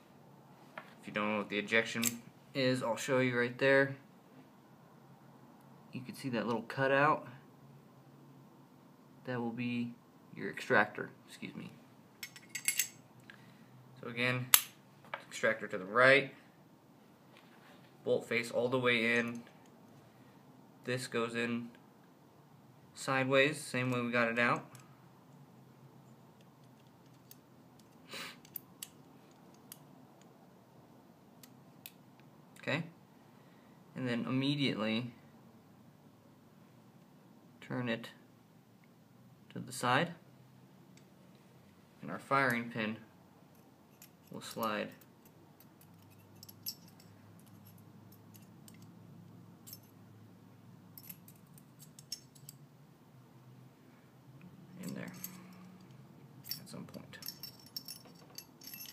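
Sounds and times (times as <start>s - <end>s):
metal gun parts clicking: 12.2s - 13.0s, 26.4s - 29.8s, 45.0s - 48.9s, 51.0s - 52.6s, 57.2s - 58.9s.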